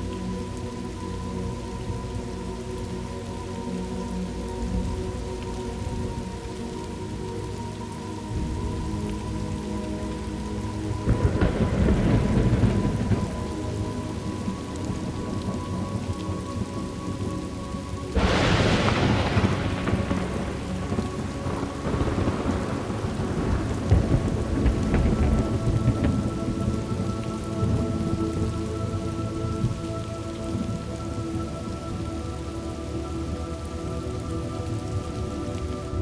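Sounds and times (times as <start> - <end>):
steady rain: 0.0 - 36.0
thunder rumble: 0.0 - 36.0
thunderclap: 11.0 - 16.0, 18.2 - 29.8.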